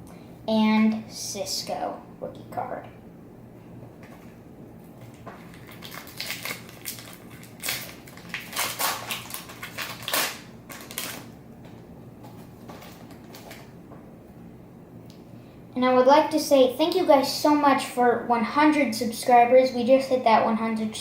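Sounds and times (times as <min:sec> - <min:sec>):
wrapper crinkling: 0:05.1 - 0:11.4, 0:12.6 - 0:13.8.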